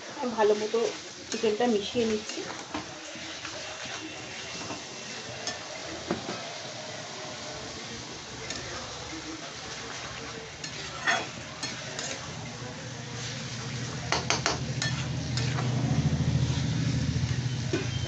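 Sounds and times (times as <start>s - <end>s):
low sizzle: 0.0s - 18.0s
spoon scraping in a pan: 0.5s - 16.8s
low hum: 15.1s - 18.0s.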